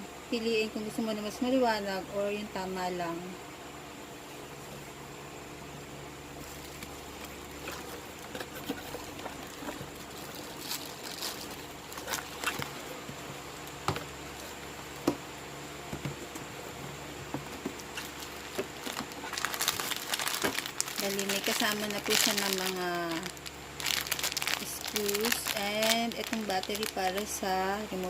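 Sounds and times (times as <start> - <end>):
steady low hum: 0.0 - 28.0
packaging clicks and rustles: 6.4 - 13.1, 17.4 - 28.0.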